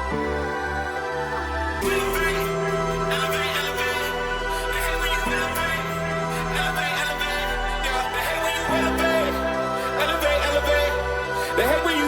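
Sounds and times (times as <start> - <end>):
hip hop beat with heavy bass: 0.0 - 12.0.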